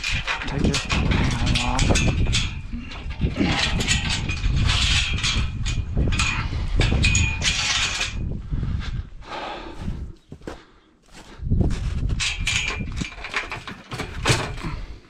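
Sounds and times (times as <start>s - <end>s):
metal panel clanking and rattling: 0.0s - 8.3s, 11.9s - 15.0s.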